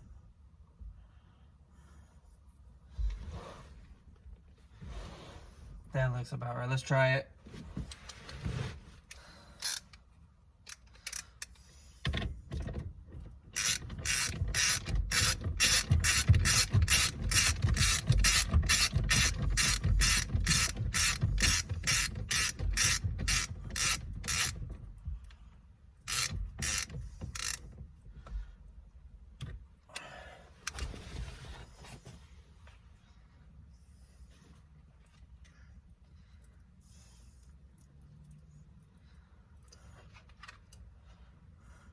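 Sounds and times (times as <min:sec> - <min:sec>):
ratchet wrench clicking: 0:09.6 - 0:10.0, 0:10.6 - 0:11.7, 0:13.6 - 0:24.6, 0:26.1 - 0:27.6.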